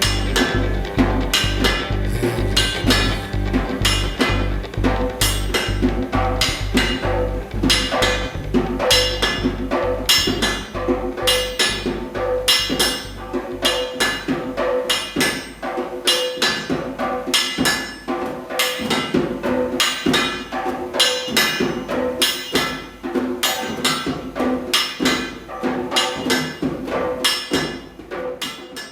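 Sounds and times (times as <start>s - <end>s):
background music: 0.0s - 14.0s.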